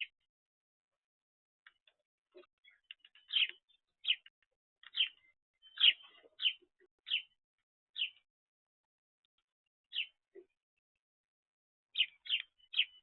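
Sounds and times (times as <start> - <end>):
bird chirping: 0.0 - 0.3, 1.6 - 8.3, 9.3 - 11.0, 11.9 - 13.0.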